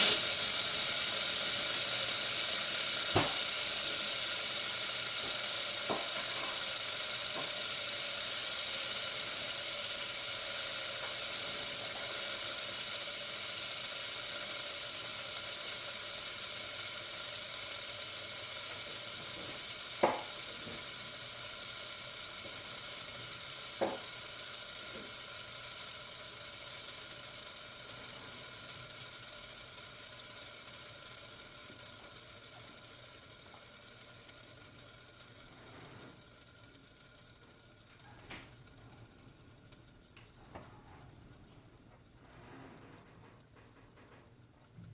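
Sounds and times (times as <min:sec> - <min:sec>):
fidget spinner whirring: 0:00.0 - 0:44.9.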